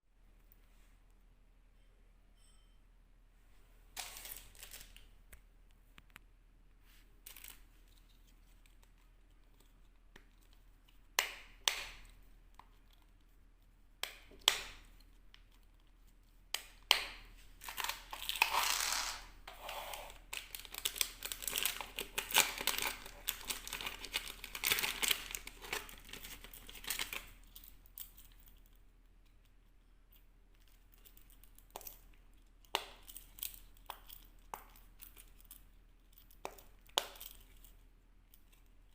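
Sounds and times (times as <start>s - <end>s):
packaging crinkling and tearing: 4.0s - 5.1s, 17.6s - 19.2s, 20.0s - 28.4s
packaging clicks and snaps: 20.1s - 28.7s.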